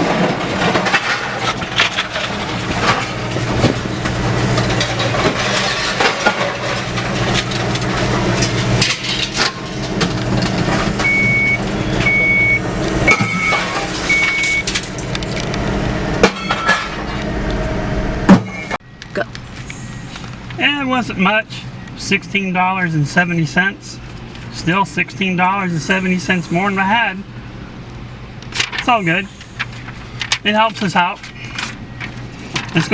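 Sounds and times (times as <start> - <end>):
knocks and clatters: 0.0 - 11.2, 29.6 - 32.9
vehicle engine idling: 0.0 - 32.9
backup alarm beeps: 11.0 - 14.7, 18.4 - 20.2.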